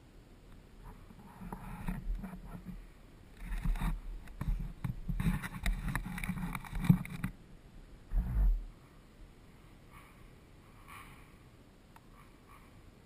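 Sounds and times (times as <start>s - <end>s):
knocks and rattles over bumps: 0.9s - 7.4s.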